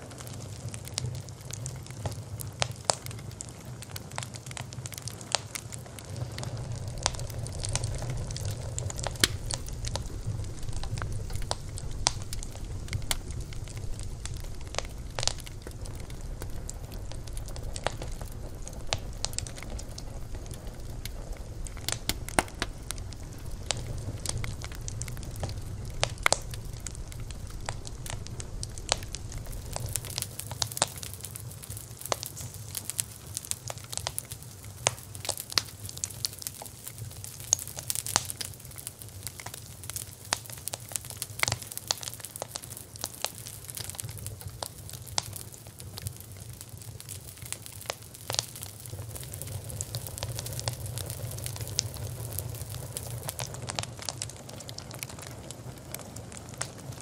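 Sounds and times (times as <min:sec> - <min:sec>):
wood fire crackling: 0:00.0 - 0:57.0
low steady rumble: 0:05.6 - 0:33.3.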